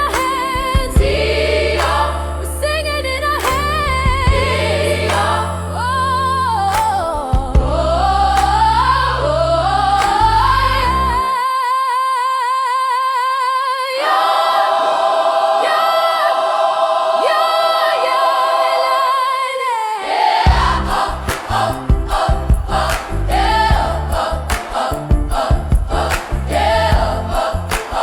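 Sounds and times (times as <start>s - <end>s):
band playing: 0.0s - 5.9s
choir singing wordless melody: 0.0s - 28.0s.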